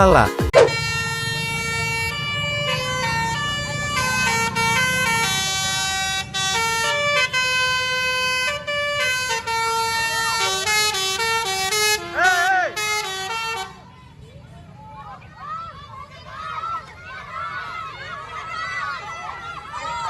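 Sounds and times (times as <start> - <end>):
multi-tone bus horn melody: 0.0 - 14.2.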